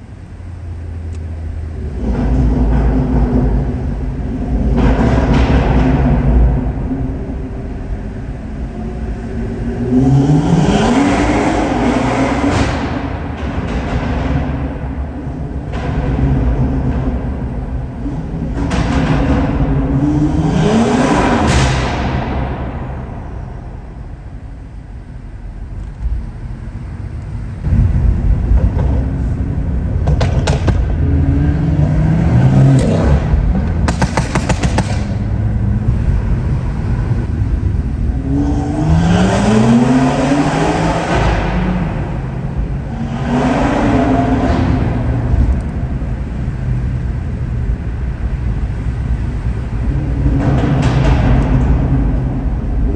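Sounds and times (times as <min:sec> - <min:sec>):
car engine accelerating: 0:00.0 - 0:52.9
exhaust cracks: 0:00.0 - 0:52.9.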